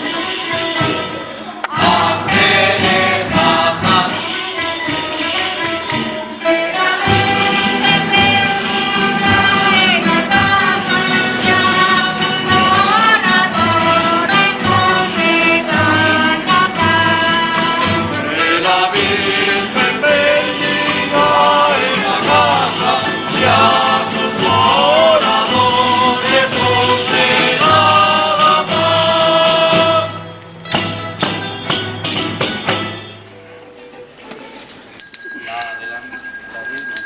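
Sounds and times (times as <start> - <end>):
percussion strikes: 0.0 - 34.1
instrumental accompaniment: 0.0 - 35.1
group singing in chorus: 0.8 - 5.3, 6.4 - 30.5.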